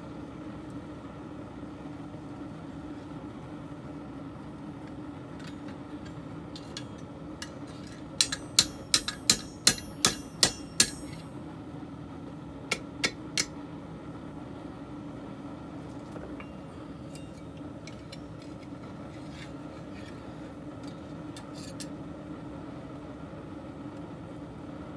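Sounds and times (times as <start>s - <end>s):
steady low hum: 1.8s - 11.5s, 12.3s - 22.6s
hammer striking blade on anvil: 6.6s - 11.3s, 12.7s - 13.6s, 16.4s - 21.9s.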